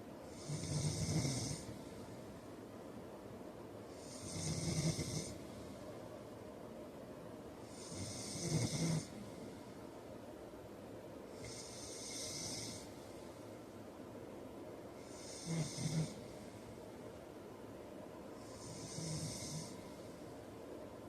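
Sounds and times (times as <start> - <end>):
soft hissing breath: 0.0 - 2.8, 3.6 - 6.2, 7.5 - 10.2, 11.2 - 14.0, 14.8 - 17.4, 18.2 - 21.0
man snoring: 0.3 - 1.8, 3.9 - 5.4, 7.7 - 9.2, 11.4 - 12.9, 15.0 - 16.3, 18.4 - 19.9.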